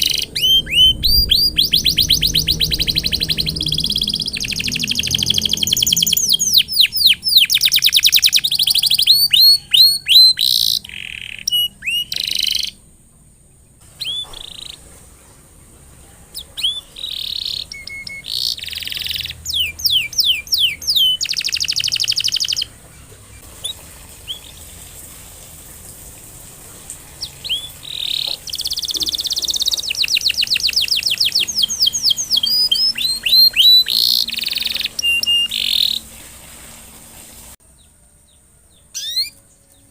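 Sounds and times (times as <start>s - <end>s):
canary singing trills: 0.0s - 15.1s, 16.3s - 24.8s, 27.1s - 36.2s, 37.7s - 39.9s.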